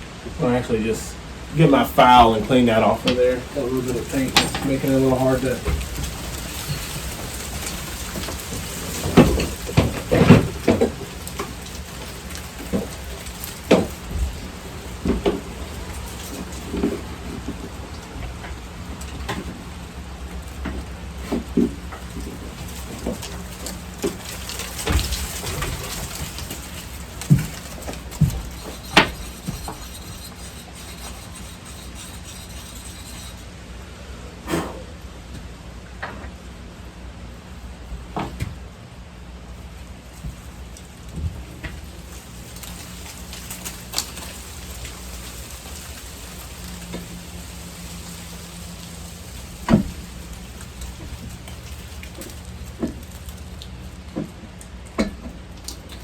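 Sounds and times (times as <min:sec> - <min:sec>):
hand tools knocking on metal parts: 0:02.0 - 0:33.2
hand file rasping on metal: 0:28.6 - 0:33.5.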